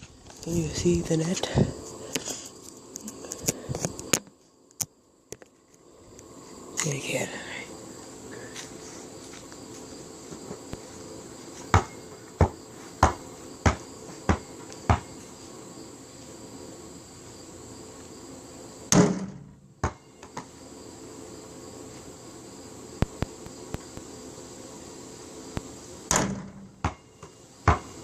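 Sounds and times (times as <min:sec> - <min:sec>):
high-pitched whine: 0:00.0 - 0:28.0
basketball bouncing: 0:11.7 - 0:15.1, 0:19.8 - 0:20.0, 0:26.1 - 0:27.9
loud thud: 0:18.9 - 0:20.0, 0:26.1 - 0:27.0.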